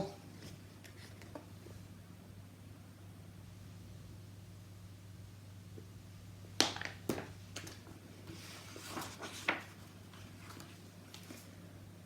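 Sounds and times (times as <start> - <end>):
low electrical hum: 0.0 - 12.0
paper rustling: 7.7 - 11.6.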